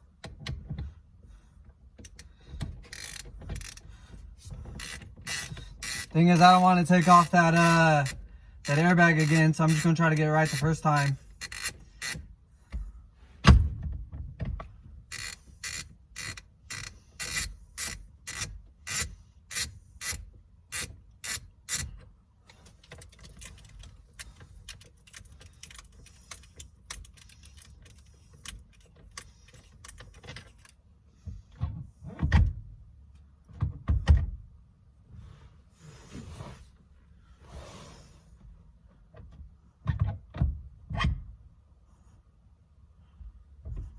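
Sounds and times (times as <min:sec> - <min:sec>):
ratchet wrench clicking: 0:02.8 - 0:03.8, 0:04.8 - 0:12.2, 0:15.1 - 0:21.9.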